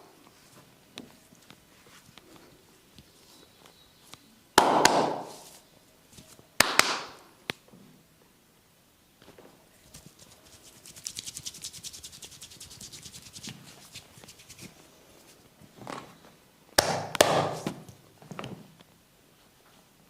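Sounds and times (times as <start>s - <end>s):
sharp smacks: 4.6s - 5.4s, 6.6s - 7.2s, 16.8s - 17.7s
fingers scratching through hair: 9.8s - 14.8s.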